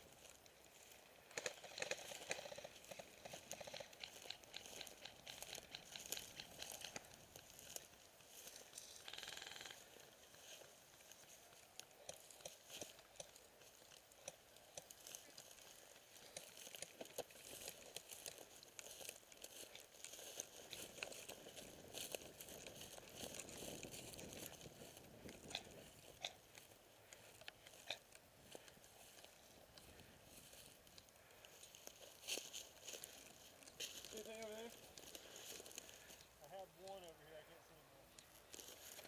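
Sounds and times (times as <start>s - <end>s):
faint crunching and rustling: 0.0s - 39.0s
sharp clicks: 1.3s - 7.2s.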